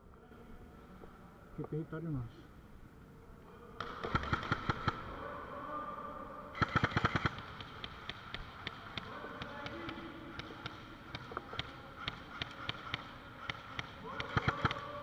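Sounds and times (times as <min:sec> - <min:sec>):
airsoft guns firing: 0:03.8 - 0:05.2, 0:06.5 - 0:15.0.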